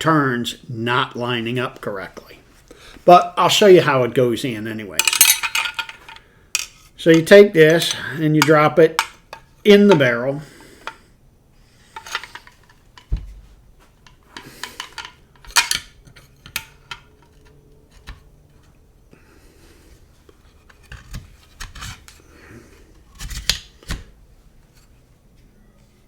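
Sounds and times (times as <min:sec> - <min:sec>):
metal clicking rattling and scraping: 0:05.0 - 0:10.0, 0:11.9 - 0:13.1, 0:14.0 - 0:18.6.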